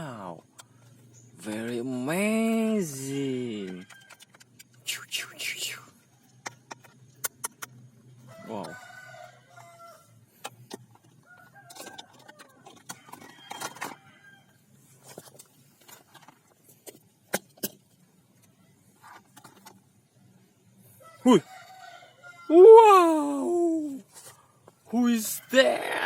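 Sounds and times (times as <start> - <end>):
sharp clicks: 6.4 - 7.8.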